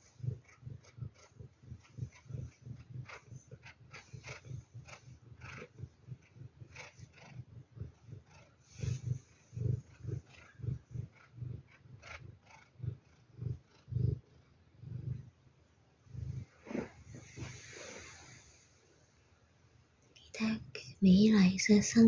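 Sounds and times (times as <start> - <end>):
animal grunting calls: 0.0 - 15.2.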